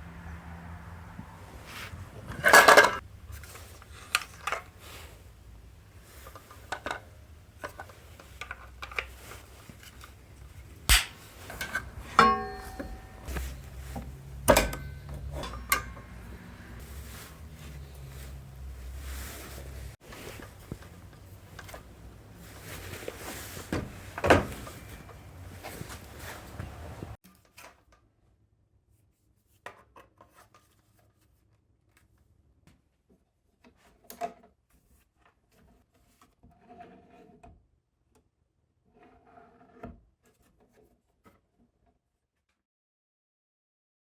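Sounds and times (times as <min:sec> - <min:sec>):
tool handling clicks and knocks: 0:02.3 - 0:04.8, 0:06.2 - 0:19.0, 0:19.6 - 0:27.2.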